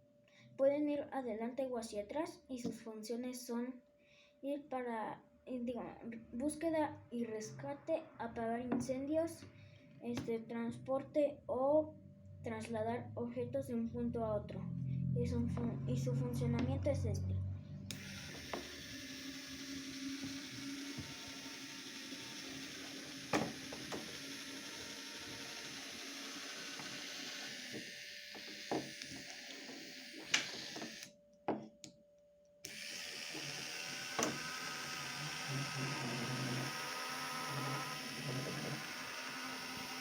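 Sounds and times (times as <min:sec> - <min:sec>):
small electric motor turning gears: 0:17.9 - 0:31.1, 0:32.6 - 0:40.0.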